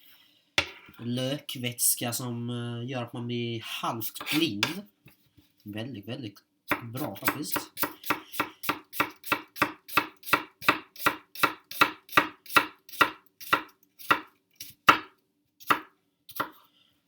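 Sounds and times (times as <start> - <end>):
knife chopping on cutting board: 6.7 - 16.6.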